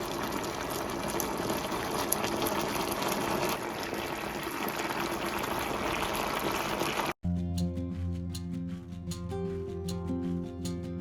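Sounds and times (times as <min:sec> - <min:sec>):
food bubbling in a pan: 0:00.0 - 0:07.2.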